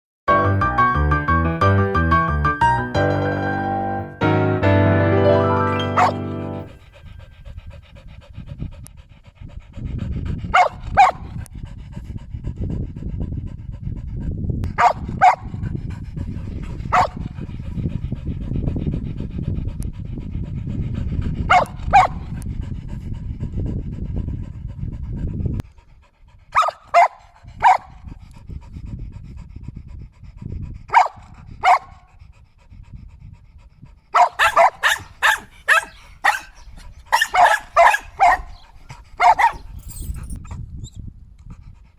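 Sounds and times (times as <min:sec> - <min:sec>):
dog panting hard: 0:05.3 - 0:41.9
dog barking: 0:05.7 - 0:06.8, 0:10.6 - 0:11.2, 0:14.8 - 0:15.5, 0:16.9 - 0:17.3, 0:21.5 - 0:22.2, 0:26.6 - 0:27.9, 0:30.9 - 0:32.0, 0:34.2 - 0:40.3.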